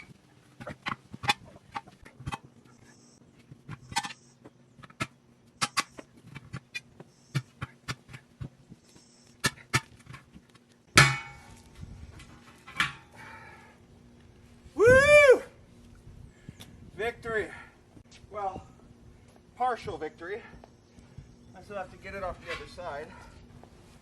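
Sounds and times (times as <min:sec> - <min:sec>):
loud metal clank with ring: 0:11.0 - 0:11.6.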